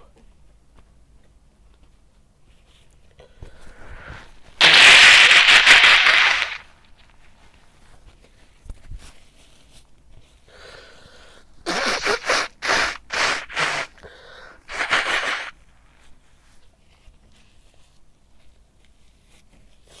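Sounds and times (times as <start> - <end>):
man sneezing: 4.6 - 6.6, 11.7 - 15.5
man inhaling: 12.2 - 15.0.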